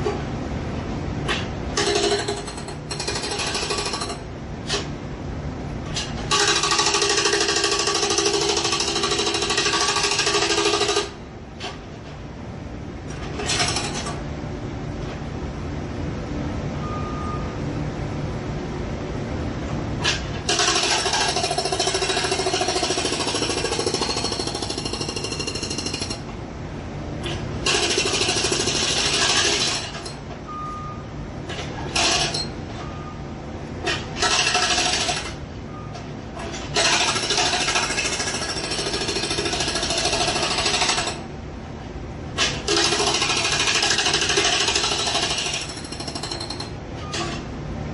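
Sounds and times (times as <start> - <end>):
jackhammer hammering: 1.8 - 4.2, 6.3 - 11.2, 20.5 - 26.2, 27.6 - 30.0, 34.2 - 35.4, 36.8 - 41.2, 42.7 - 46.7.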